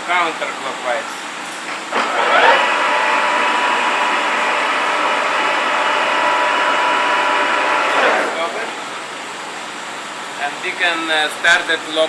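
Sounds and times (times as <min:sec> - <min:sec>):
lathe spindle whine: 0:02.0 - 0:08.5.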